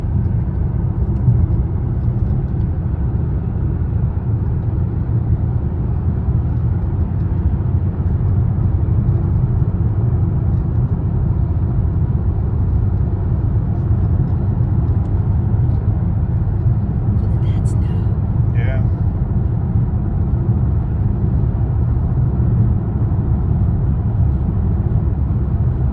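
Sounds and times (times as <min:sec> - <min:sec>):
diesel engine low rumble: 0:00.0 - 0:25.9.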